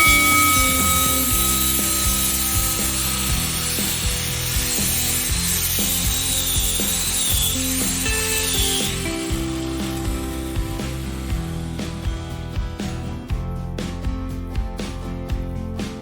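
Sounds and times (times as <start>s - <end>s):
angle grinder grinding: 0.0s - 12.0s
background music: 0.0s - 16.0s.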